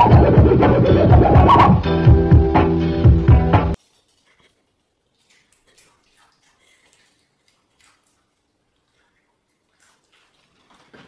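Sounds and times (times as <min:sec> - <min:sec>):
turntable scratching: 0:00.0 - 0:02.8
held chords: 0:00.0 - 0:03.8
steady music beat: 0:00.0 - 0:03.8.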